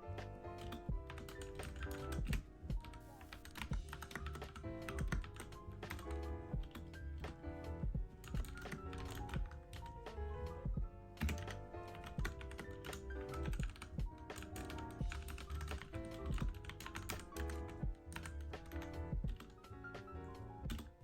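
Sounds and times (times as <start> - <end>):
soft background music: 0.0 - 21.0
mechanical keyboard typing: 0.6 - 7.4, 8.1 - 10.1, 11.1 - 19.7, 20.6 - 21.0.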